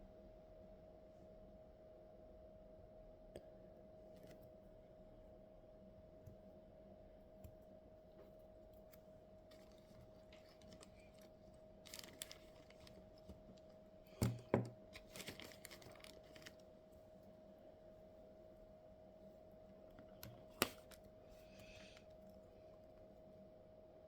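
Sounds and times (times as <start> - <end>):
faint steady hum: 0.0 - 24.0.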